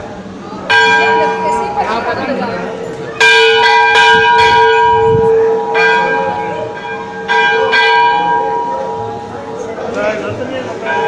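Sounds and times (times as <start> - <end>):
large metal bell ringing: 0.0 - 11.0.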